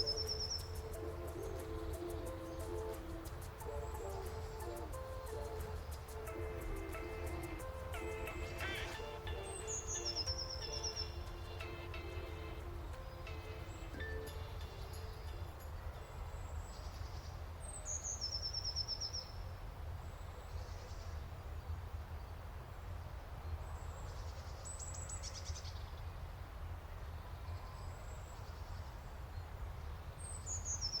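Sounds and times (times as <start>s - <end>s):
birds chirping: 0.0s - 19.4s.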